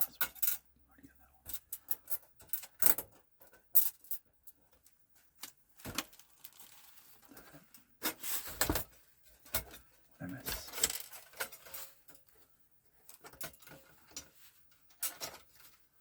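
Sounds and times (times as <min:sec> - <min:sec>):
metal screws clicking and clinking: 0:00.0 - 0:00.6, 0:01.5 - 0:03.1.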